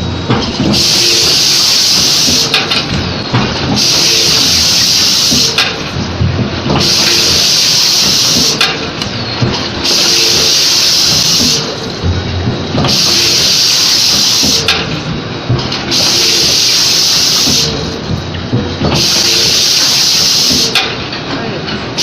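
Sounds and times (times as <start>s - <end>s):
loud high-pitched hiss: 0.7s - 2.6s, 3.8s - 5.6s, 6.8s - 8.6s, 9.8s - 11.8s, 12.9s - 14.7s, 15.9s - 17.8s, 19.0s - 20.8s.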